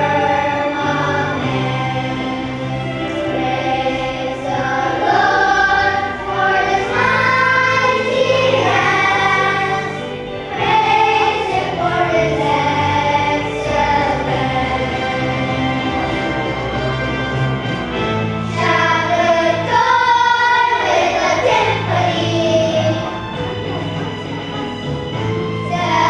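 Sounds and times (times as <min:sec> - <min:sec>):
children's choir singing gospel: 0:00.0 - 0:26.0
instrumental accompaniment: 0:00.0 - 0:26.0.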